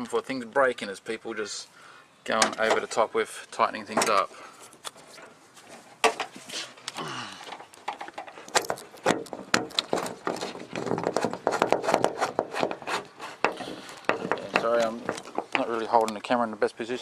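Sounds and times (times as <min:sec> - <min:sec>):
clicks and rattles of door parts: 0:03.9 - 0:04.3, 0:07.5 - 0:12.7.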